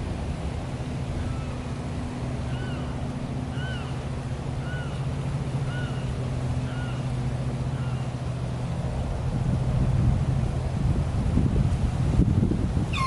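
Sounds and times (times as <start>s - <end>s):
motor hum: 0.0s - 13.0s
bird call: 2.5s - 4.0s, 4.6s - 5.0s, 5.7s - 7.0s
wind noise: 9.0s - 13.0s.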